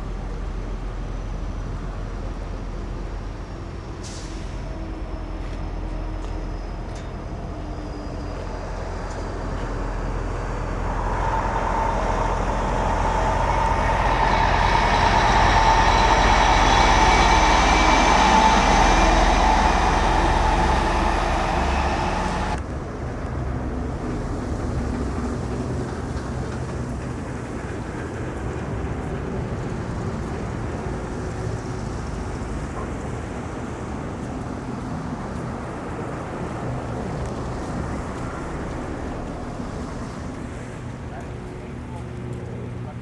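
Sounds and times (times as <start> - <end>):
steady mechanical whine: 0.0 - 23.5
mechanical rumble: 8.6 - 33.8.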